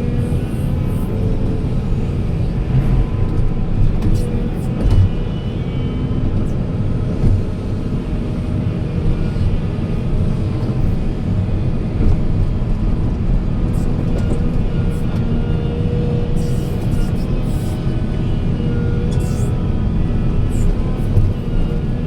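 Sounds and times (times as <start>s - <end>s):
construction machine engine rumbling: 0.0s - 22.0s.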